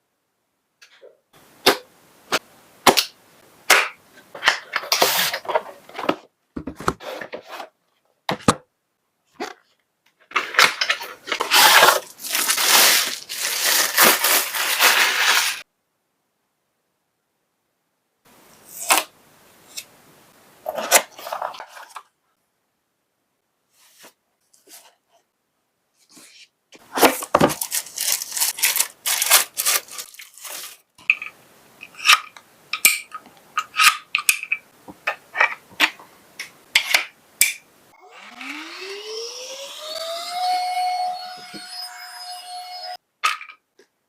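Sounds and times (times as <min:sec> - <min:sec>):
rustling cardboard and plastic: 0:09.3 - 0:15.7, 0:20.6 - 0:22.2, 0:26.0 - 0:31.3
packaging clicks: 0:27.5 - 0:30.8.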